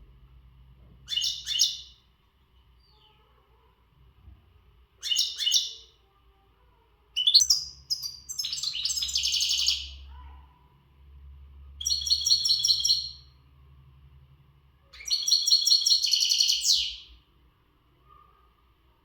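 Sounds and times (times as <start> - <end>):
goldfinch twittering song: 7.2 - 10.0, 11.8 - 13.2.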